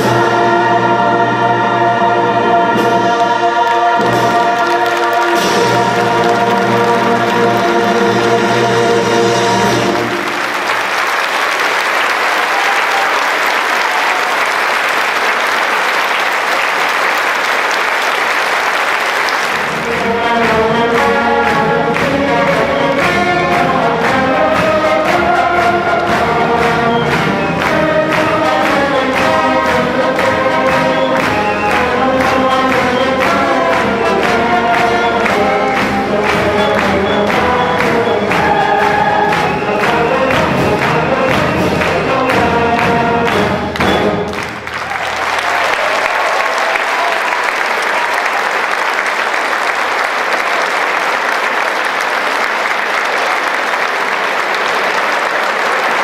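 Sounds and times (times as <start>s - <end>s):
choir with instrumental accompaniment: 0.0s - 10.8s, 19.4s - 45.0s
audience applauding: 3.7s - 56.0s.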